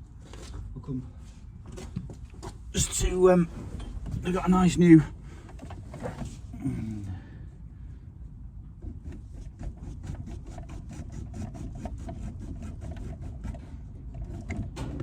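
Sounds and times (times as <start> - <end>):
hacksaw cutting through pipe: 9.1 - 14.7.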